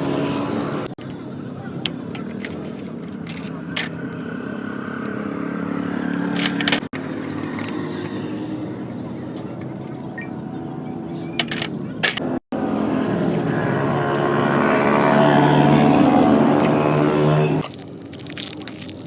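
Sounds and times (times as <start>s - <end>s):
sharp clicks and rattles: 0.1s - 4.3s, 6.1s - 8.3s, 11.4s - 15.2s.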